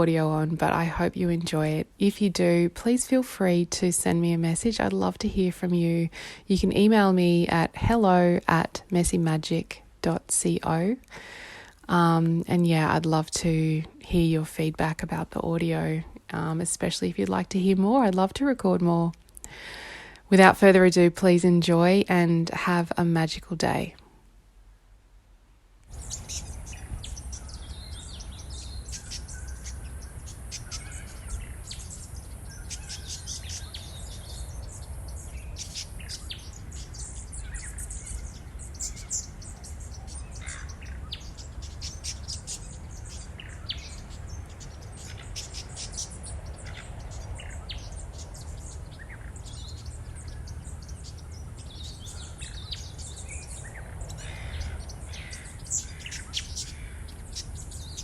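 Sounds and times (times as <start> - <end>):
wild birds chirping and calling: 25.9 - 58.0.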